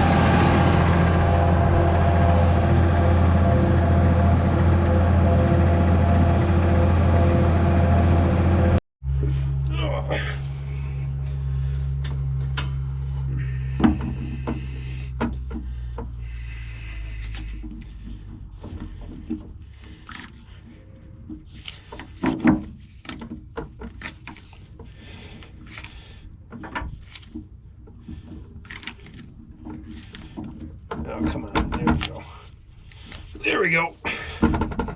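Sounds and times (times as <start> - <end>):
engine running: 0.0 - 22.2
metal clanks and knocks: 12.0 - 16.2, 26.5 - 32.4, 34.1 - 34.9.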